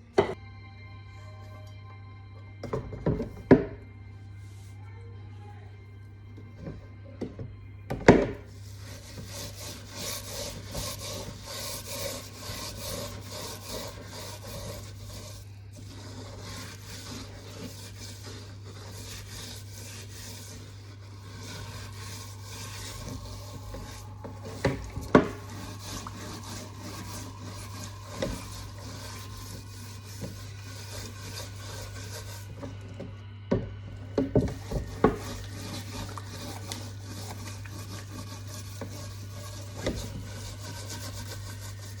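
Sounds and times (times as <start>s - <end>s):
rasping scraping strokes: 8.3s - 33.2s, 34.1s - 42.0s
steady low hum: 8.5s - 42.0s.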